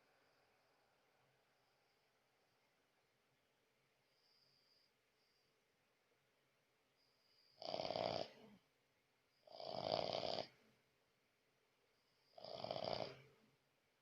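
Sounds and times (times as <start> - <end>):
dog snoring: 7.6 - 8.6, 9.5 - 10.6, 12.3 - 13.4.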